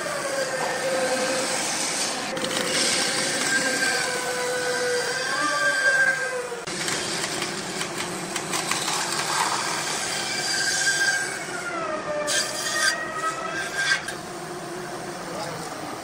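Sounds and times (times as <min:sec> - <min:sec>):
lathe tool scraping wood: 0:00.0 - 0:07.7, 0:08.7 - 0:15.9
wandering squeal: 0:03.0 - 0:06.7, 0:09.4 - 0:14.2.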